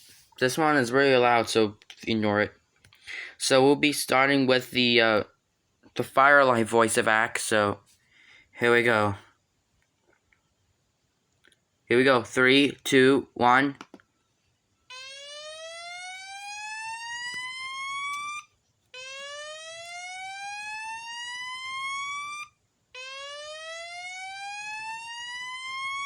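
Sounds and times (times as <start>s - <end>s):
rising whoop alarm tone: 14.9s - 26.0s.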